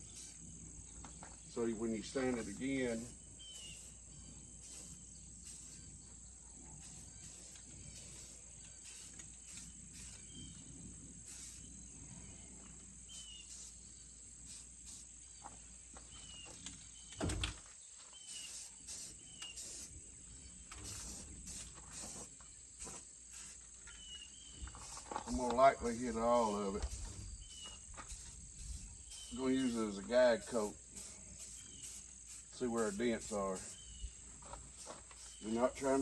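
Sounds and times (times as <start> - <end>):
short hissing bursts: 0.0 - 0.7, 1.6 - 6.0, 6.7 - 15.4, 18.2 - 36.0
high-pitched insect drone: 2.1 - 10.6, 24.6 - 36.0.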